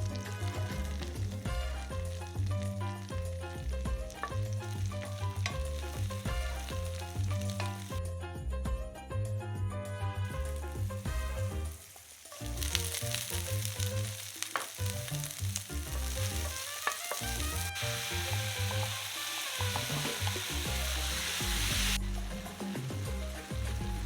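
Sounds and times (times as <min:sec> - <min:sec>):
food sizzling in a pan: 0:00.0 - 0:08.0, 0:10.1 - 0:24.0
latin background music: 0:00.0 - 0:24.0.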